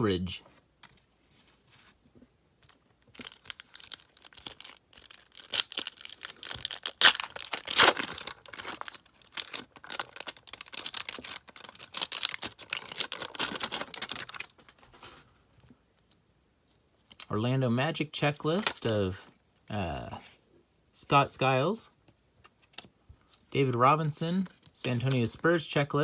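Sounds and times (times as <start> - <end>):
wrapper tearing and crinkling: 3.1 - 14.8.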